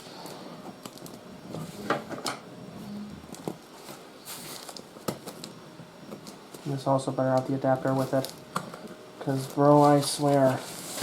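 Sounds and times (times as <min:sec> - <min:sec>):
packaging rustling: 0:03.3 - 0:05.5, 0:07.8 - 0:11.0.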